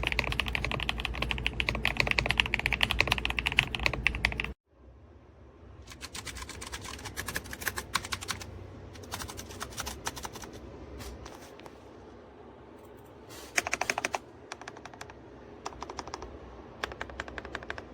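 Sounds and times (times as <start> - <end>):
mechanical keyboard typing: 0.0 - 4.6, 5.9 - 10.6, 13.6 - 17.9.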